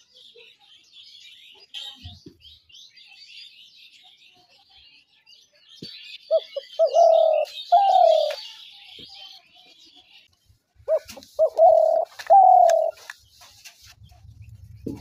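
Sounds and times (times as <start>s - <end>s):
small birds chirping: 0.0s - 15.0s
dove cooing: 6.3s - 8.4s, 10.9s - 13.1s.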